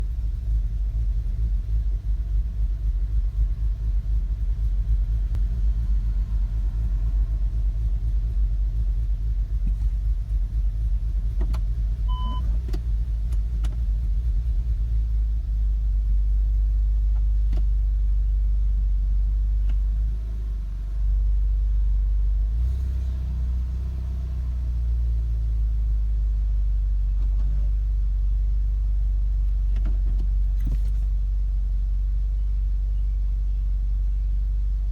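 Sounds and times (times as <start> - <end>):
car engine idling rough: 0.0 - 34.9
short beep: 12.1 - 12.5.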